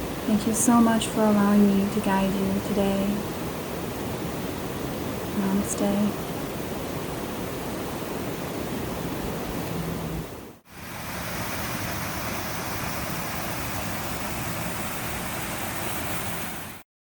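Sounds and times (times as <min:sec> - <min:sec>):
waterfall rushing: 0:03.2 - 0:16.8.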